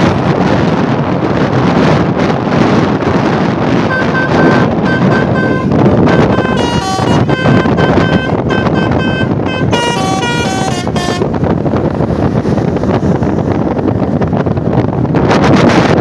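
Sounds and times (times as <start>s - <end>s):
wind and traffic rumble: 0.0s - 16.0s
musical air horn tune: 3.9s - 11.4s.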